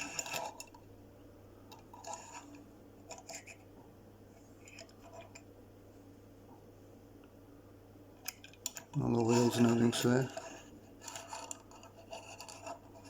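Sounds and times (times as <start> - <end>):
low steady hum: 0.0 - 13.0
toy handling clicks and rustles: 8.2 - 13.0.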